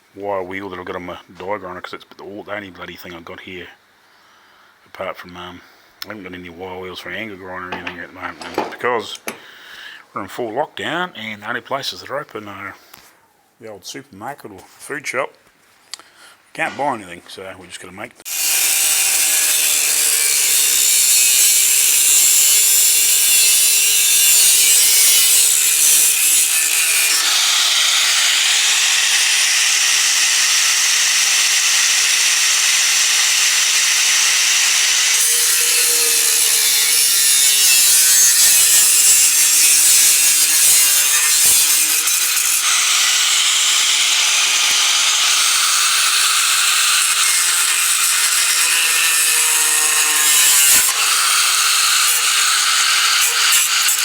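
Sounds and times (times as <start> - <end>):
wire wheel grinder scrubbing metal: 18.3 - 54.0.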